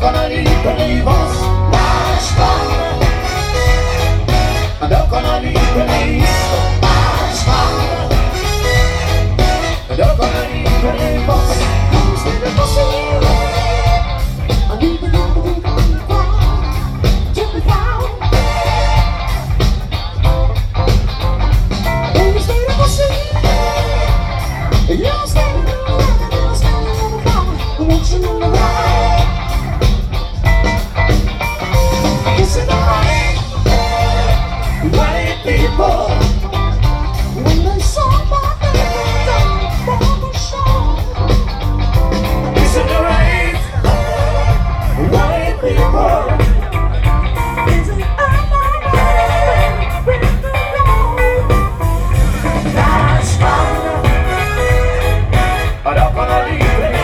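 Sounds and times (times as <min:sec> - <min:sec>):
person singing: 0:00.0 - 0:19.2, 0:42.6 - 0:47.0, 0:52.4 - 0:57.0
bass-heavy beat: 0:00.0 - 0:57.0
guitar: 0:00.0 - 0:57.0
rock song: 0:00.0 - 0:57.0.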